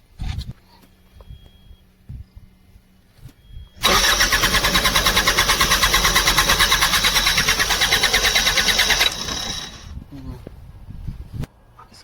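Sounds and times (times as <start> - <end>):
diesel engine cranking: 3.8 - 10.0.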